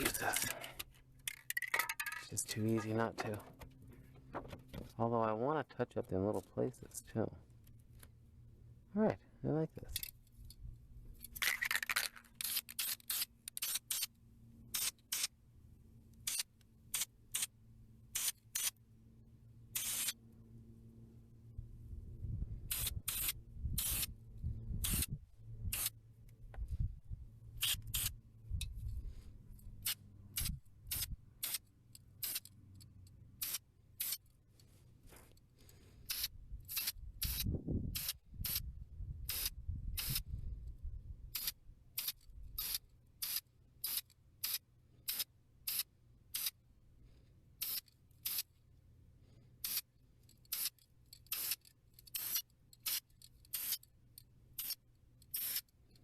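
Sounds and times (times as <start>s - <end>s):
spray paint can spritzes: 50.5s - 53.8s, 54.6s - 55.7s.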